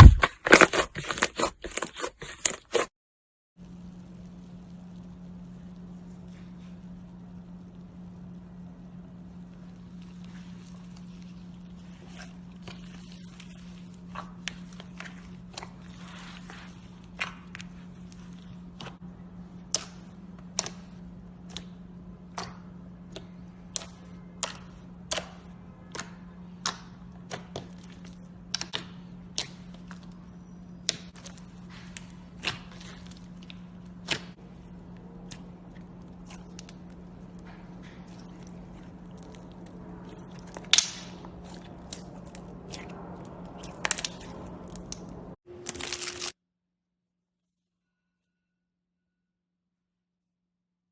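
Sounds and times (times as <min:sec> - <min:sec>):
steady low hum: 0:03.6 - 0:46.4
slime popping and clicking: 0:40.4 - 0:41.1.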